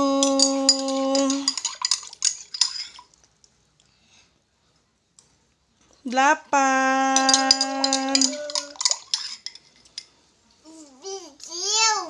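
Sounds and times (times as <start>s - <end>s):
woman sing-song counting: 0.0s - 1.6s, 6.1s - 8.8s
spoon clinking against cup: 0.2s - 3.1s, 7.2s - 10.1s.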